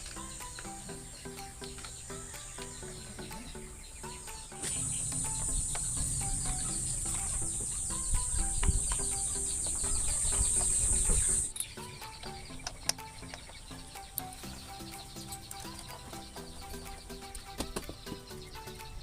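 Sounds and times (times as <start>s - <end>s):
upbeat background music: 0.0s - 19.0s
loud high-pitched hiss: 4.6s - 11.5s.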